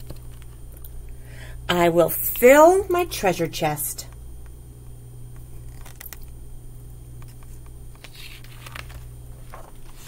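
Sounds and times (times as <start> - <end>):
low room hum: 0.0 - 10.0
book pages rustling: 7.2 - 10.0.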